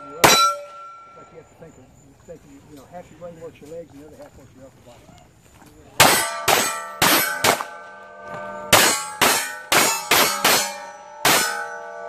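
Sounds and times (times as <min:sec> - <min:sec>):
bullets clanging on steel plates: 0:00.0 - 0:01.2, 0:06.0 - 0:12.0
rapid gunfire: 0:06.0 - 0:07.8.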